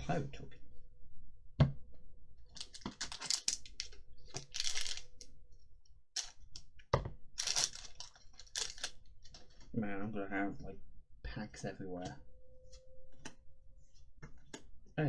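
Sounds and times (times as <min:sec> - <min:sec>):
cards rustling and sliding: 0:02.6 - 0:05.2, 0:06.2 - 0:06.4, 0:07.4 - 0:09.0.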